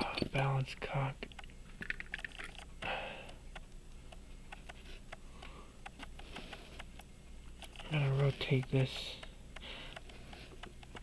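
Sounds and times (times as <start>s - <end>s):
tweezers and tools clicking: 4.5s - 11.0s.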